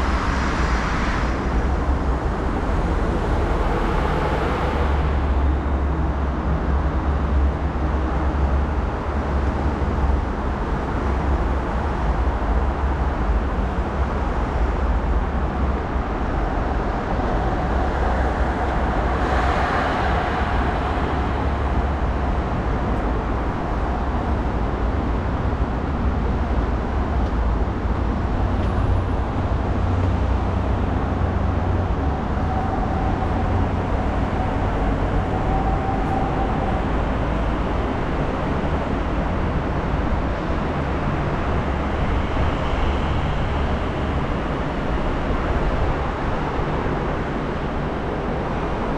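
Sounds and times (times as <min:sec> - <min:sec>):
road traffic rumble: 0:00.0 - 0:48.9.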